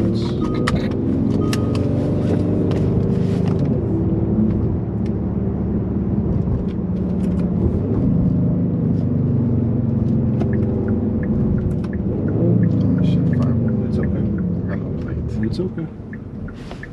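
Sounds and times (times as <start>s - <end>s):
car engine running: 0.0s - 16.9s
road and tyre rumble: 0.0s - 16.9s.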